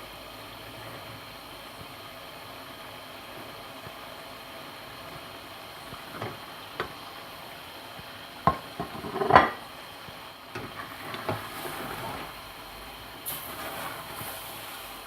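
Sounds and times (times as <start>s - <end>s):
spoon knocking on cooking pot: 8.4s - 9.6s.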